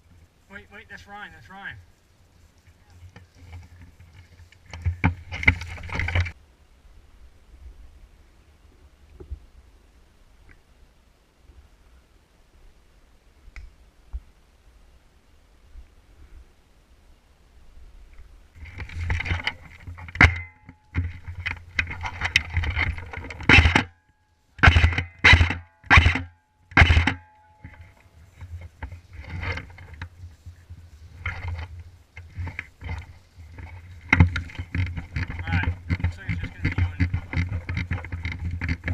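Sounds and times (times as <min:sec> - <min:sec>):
sharp clicks and knocks: 0:18.6 - 0:30.4, 0:31.2 - 0:38.9.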